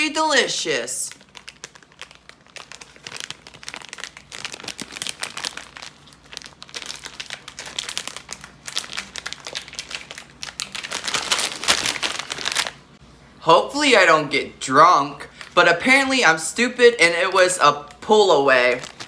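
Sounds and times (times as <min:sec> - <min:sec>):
plastic snack bag crinkling: 0:00.0 - 0:12.9, 0:15.2 - 0:15.9, 0:17.4 - 0:19.0.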